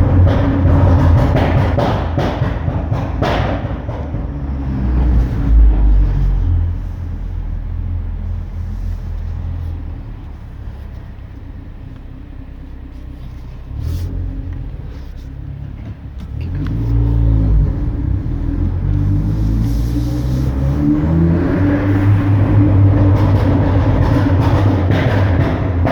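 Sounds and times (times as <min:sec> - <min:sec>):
exhaust pop: 0:00.0 - 0:08.1, 0:13.6 - 0:25.9
car exhaust rumble: 0:00.0 - 0:25.9
engine revving: 0:03.0 - 0:10.3, 0:13.7 - 0:25.9.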